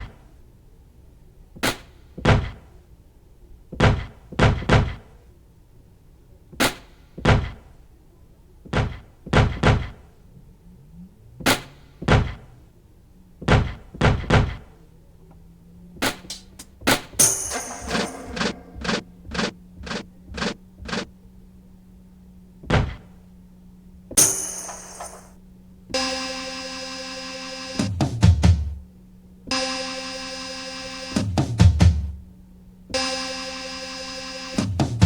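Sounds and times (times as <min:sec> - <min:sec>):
programmed drum beat: 0:17.2 - 0:21.1, 0:26.0 - 0:28.8, 0:29.6 - 0:32.3, 0:33.0 - 0:35.0.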